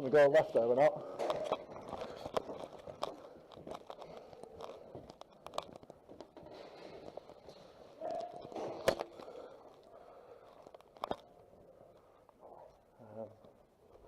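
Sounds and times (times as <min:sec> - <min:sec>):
footsteps on gritty floor: 0:01.1 - 0:09.2.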